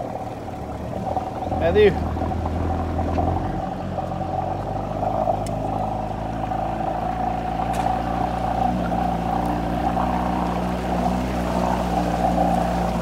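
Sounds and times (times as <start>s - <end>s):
engine humming steadily: 0.0s - 13.0s.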